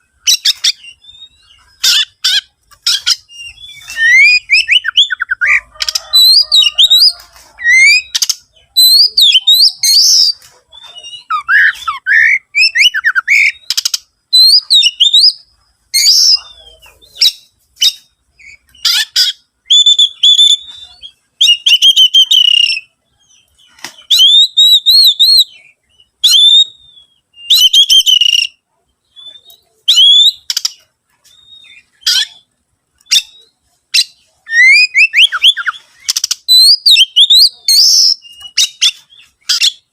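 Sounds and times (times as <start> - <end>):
bird singing whistled notes: 0.0 - 39.9.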